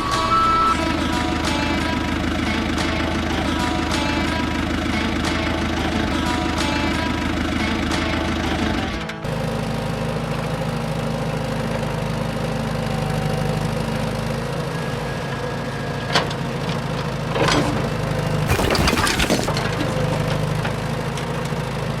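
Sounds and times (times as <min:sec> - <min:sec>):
sharp crack: 0:18.5 - 0:19.7
crunching breaking noise: 0:18.5 - 0:19.9.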